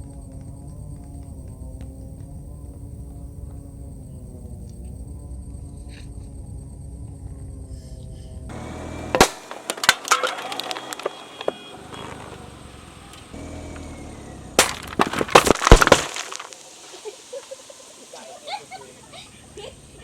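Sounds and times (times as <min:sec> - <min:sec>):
car rolling rumble: 0:00.0 - 0:20.0
drink cans crunching: 0:08.6 - 0:12.4, 0:14.6 - 0:17.0.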